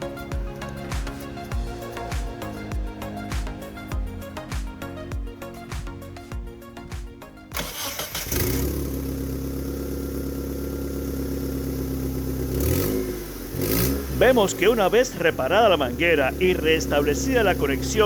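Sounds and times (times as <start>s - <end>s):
background music: 0.0s - 18.0s
car engine starting and running: 0.0s - 18.0s
car engine revving: 7.5s - 18.0s.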